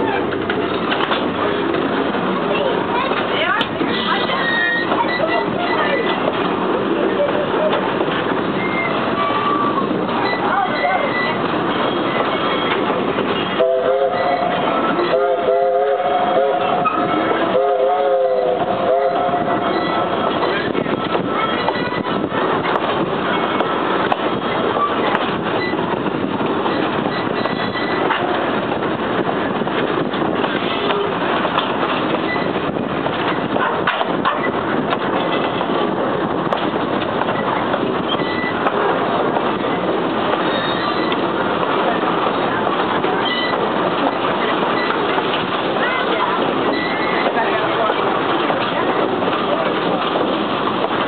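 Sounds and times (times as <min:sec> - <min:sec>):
train running noise: 0:00.0 - 0:51.0
locomotive chime whistle: 0:13.6 - 0:20.2.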